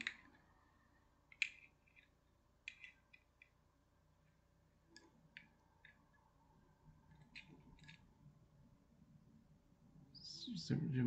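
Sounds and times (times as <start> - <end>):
small metal parts clicking: 0.0 - 0.4, 1.3 - 3.6, 7.1 - 8.1.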